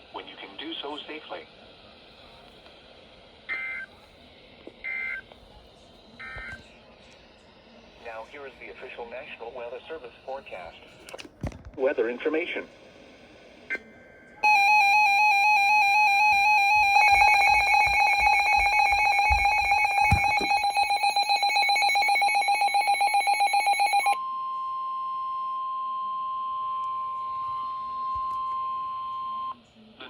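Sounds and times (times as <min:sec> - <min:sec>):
rapid pulsing beeps: 0:04.8 - 0:05.3, 0:06.2 - 0:06.6, 0:14.4 - 0:24.2
steady warning alarm tone: 0:04.8 - 0:05.3, 0:06.1 - 0:06.6, 0:14.4 - 0:29.6
warbling electronic alarm: 0:06.2 - 0:06.6, 0:14.4 - 0:29.6.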